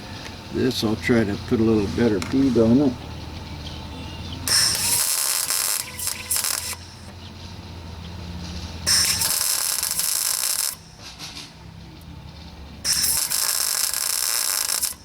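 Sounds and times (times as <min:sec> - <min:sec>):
welder low hum: 0:04.4 - 0:07.2, 0:08.8 - 0:11.1, 0:12.8 - 0:15.0
welding arc sizzling and crackling: 0:04.5 - 0:07.1, 0:08.8 - 0:11.3, 0:12.8 - 0:15.0.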